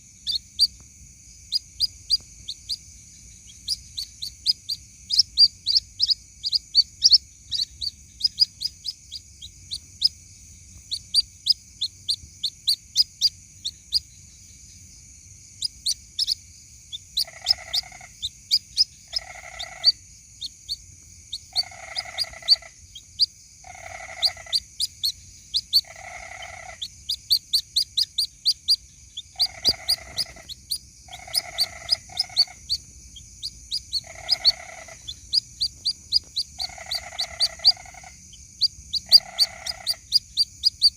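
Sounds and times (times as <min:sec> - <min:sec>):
chick peeping: 0:00.2 - 0:00.8, 0:01.4 - 0:14.2, 0:15.6 - 0:40.9
lower bird call: 0:15.6 - 0:40.9.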